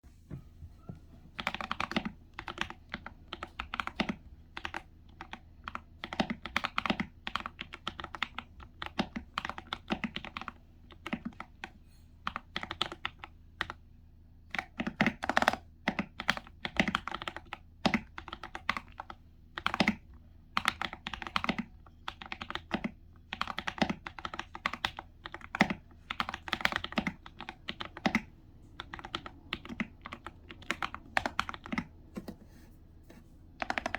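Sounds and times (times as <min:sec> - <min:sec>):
mechanical keyboard typing: 0:01.4 - 0:11.5, 0:12.3 - 0:13.8, 0:14.5 - 0:32.0, 0:33.6 - 0:33.9.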